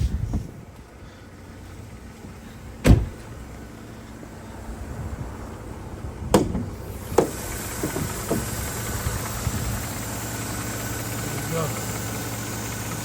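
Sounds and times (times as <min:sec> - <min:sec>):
car engine idling: 0:00.0 - 0:13.0
sharp knocks: 0:06.3 - 0:08.5.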